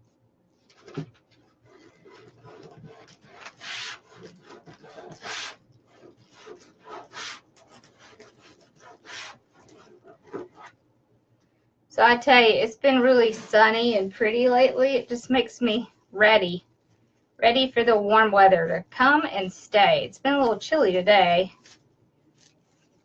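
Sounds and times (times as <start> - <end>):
mesh and ribbon rustling: 0.5 - 10.8, 21.4 - 23.0.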